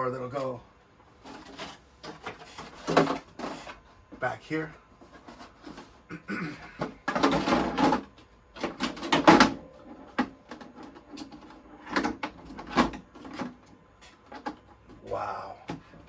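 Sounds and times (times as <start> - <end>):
rustling scrapes and knocks: 1.0 - 6.1.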